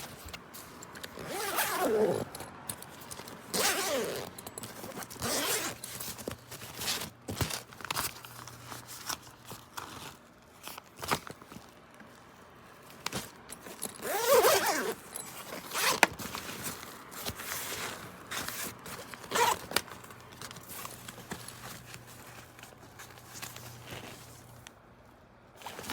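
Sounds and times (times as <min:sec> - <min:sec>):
bag fabric handling: 0:00.0 - 0:24.7, 0:25.6 - 0:25.9
backpack zipper: 0:01.0 - 0:02.4, 0:03.5 - 0:05.8, 0:13.7 - 0:16.1, 0:17.2 - 0:19.7.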